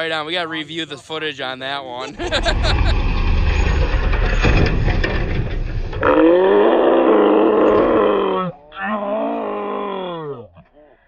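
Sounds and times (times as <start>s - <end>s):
loud rough rumble: 2.1s - 8.2s.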